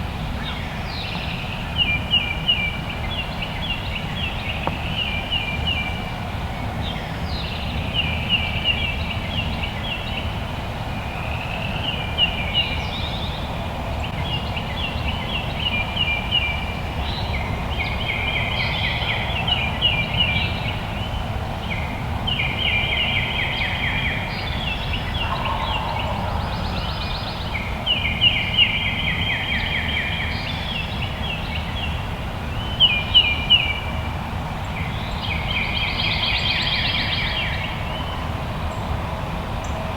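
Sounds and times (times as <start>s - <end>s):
low wind rumble: 24.2s - 29.6s.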